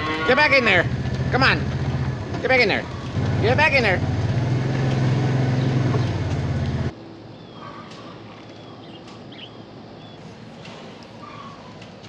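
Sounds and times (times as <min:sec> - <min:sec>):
faint outdoor ambience: 0:00.0 - 0:12.0
vehicle engine idling: 0:00.3 - 0:06.9
bird chirps: 0:01.8 - 0:03.3, 0:05.4 - 0:06.4, 0:07.3 - 0:10.3.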